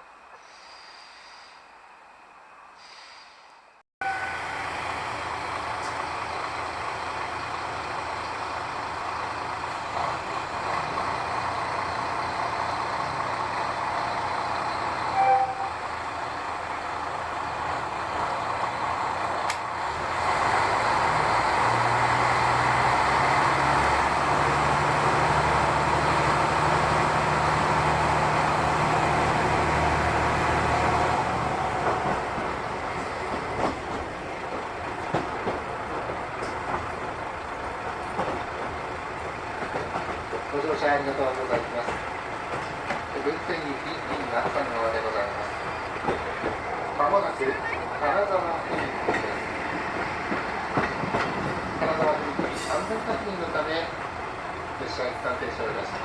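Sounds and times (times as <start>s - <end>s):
diesel railcar engine: 0.0s - 56.0s
train wheels on track: 0.0s - 56.0s
loud tone: 15.1s - 15.8s.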